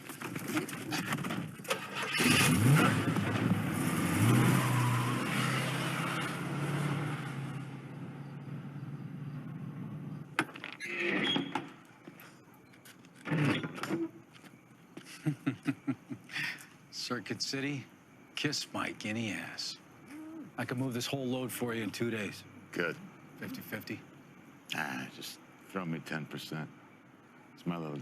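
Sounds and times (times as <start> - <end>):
vehicle engine revving: 2.1 - 10.3.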